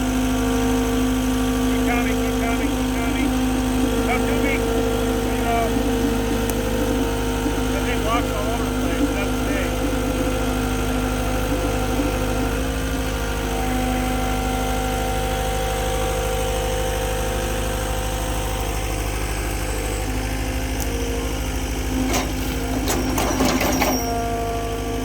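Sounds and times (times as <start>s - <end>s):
auger engine running: 0.0s - 25.0s
clattering and knocking: 22.0s - 24.2s.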